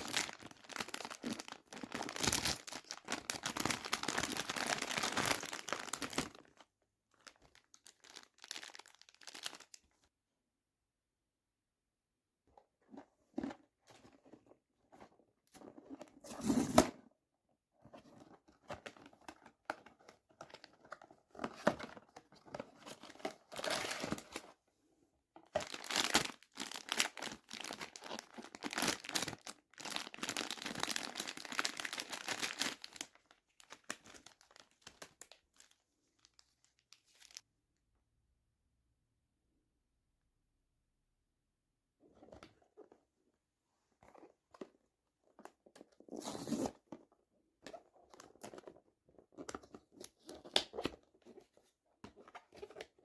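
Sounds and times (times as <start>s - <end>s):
packaging rustling and tearing: 0.0s - 6.6s, 7.2s - 9.8s, 18.5s - 24.5s, 25.6s - 37.4s.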